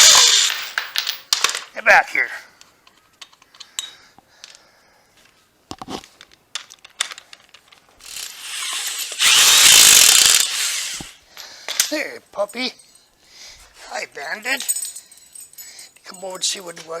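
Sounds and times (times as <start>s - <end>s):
power tool running: 0.0s - 0.5s, 8.0s - 11.2s.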